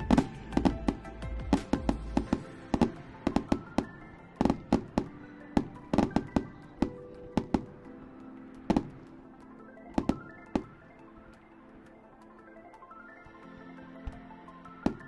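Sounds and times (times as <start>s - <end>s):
fireworks bangs and cracks: 0.0s - 8.0s
music playing: 0.0s - 15.0s.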